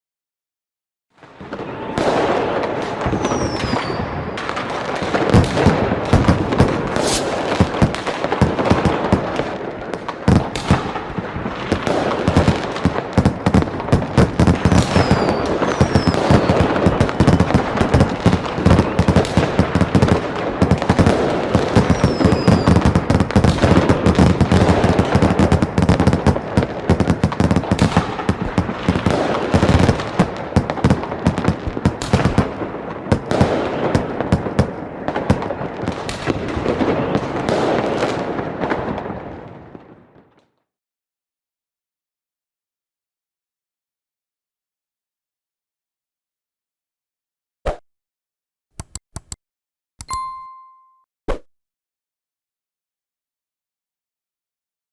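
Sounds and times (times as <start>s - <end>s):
fireworks bangs and crackling: 1.2s - 40.4s
falling firework whistles: 1.5s - 5.6s, 6.9s - 7.9s, 14.5s - 19.4s, 21.6s - 23.8s.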